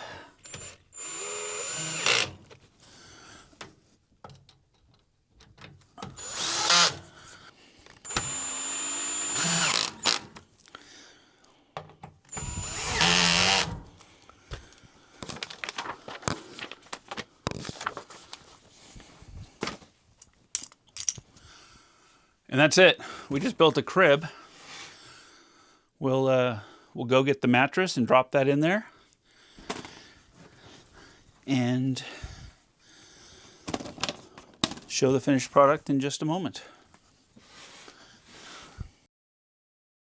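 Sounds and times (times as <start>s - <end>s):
cordless drill driving bolts: 0.4s - 2.5s, 6.0s - 7.1s, 8.0s - 10.5s, 12.3s - 14.0s
clicks and knocks of handling bolts: 3.6s - 5.9s, 20.2s - 21.3s.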